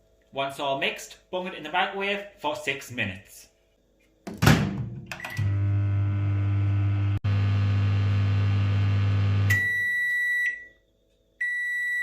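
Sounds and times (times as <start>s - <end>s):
microwave oven humming: 5.2s - 10.0s
long high beep: 9.0s - 10.6s.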